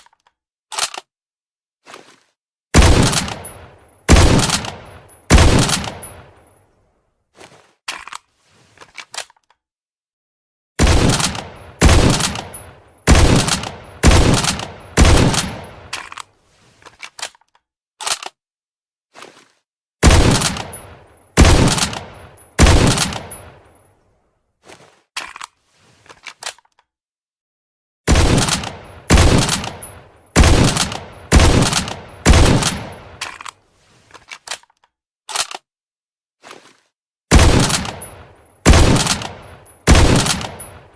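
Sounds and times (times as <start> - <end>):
rifle mechanical clicks: 0.0 - 1.1, 2.8 - 6.2, 17.0 - 18.4, 20.0 - 20.8, 21.4 - 23.4, 28.1 - 33.6, 34.3 - 35.7, 38.7 - 40.8
loud rifle shots with echo: 2.8 - 6.2, 10.8 - 15.9, 20.0 - 23.6, 28.1 - 29.8, 30.4 - 33.2, 37.3 - 40.9.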